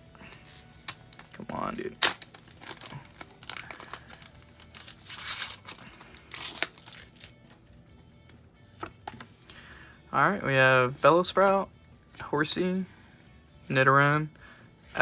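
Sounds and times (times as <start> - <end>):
foil wrapper tearing and crinkling: 0.2 - 7.4.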